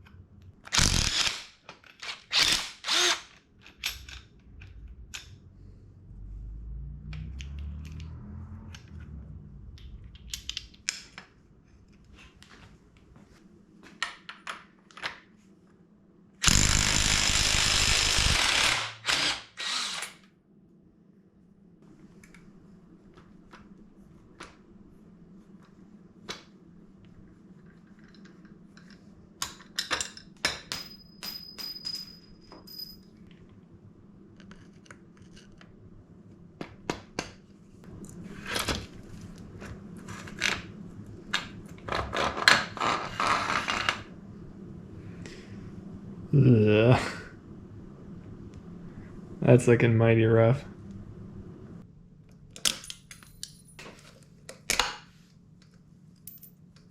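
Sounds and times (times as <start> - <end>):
power tool running: 2.0 - 3.3, 16.4 - 20.2
metal tools clicking: 52.6 - 53.8.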